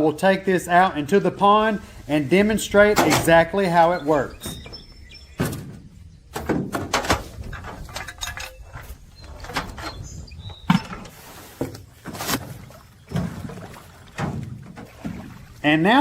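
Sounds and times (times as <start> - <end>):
metal anchor clicks and clatter: 2.9 - 3.6, 6.3 - 11.2.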